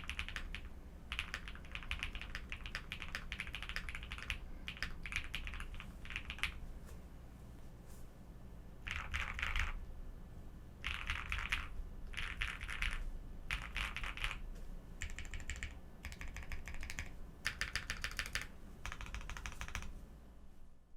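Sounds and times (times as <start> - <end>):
keyboard keys clicking: 0.0 - 6.6, 10.8 - 14.4, 15.0 - 19.9.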